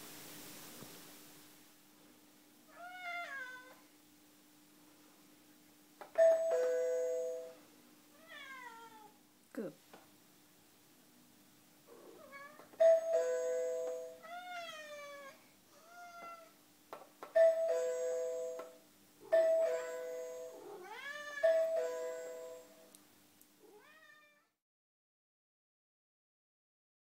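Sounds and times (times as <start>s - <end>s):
cat meowing: 2.7s - 3.8s, 8.1s - 9.2s, 14.2s - 16.6s, 20.6s - 21.8s, 23.7s - 24.6s
doorbell ding-dong chime: 6.2s - 7.6s, 12.8s - 14.2s, 17.4s - 20.6s, 21.4s - 22.7s.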